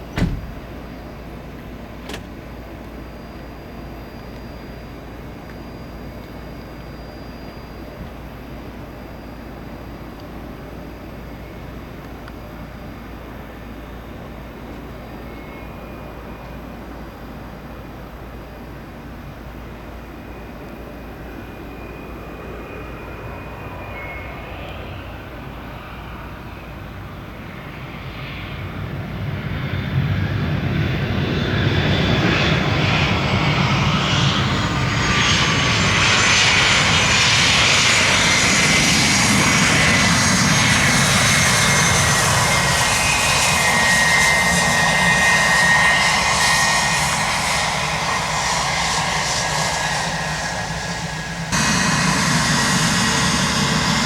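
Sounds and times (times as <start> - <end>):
jet engines landing: 0.0 - 54.0
high whining engine tones: 32.6 - 54.0.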